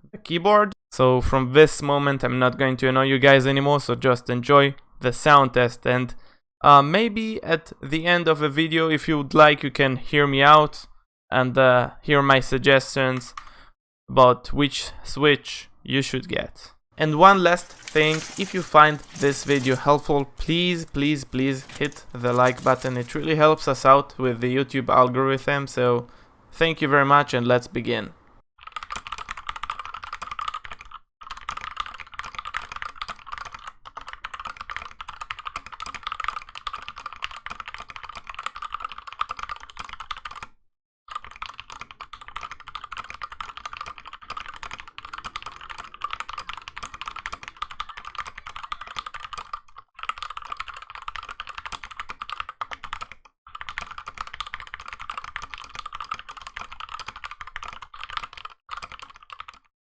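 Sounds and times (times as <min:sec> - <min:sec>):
mechanical keyboard typing: 0:41.1 - 0:59.7.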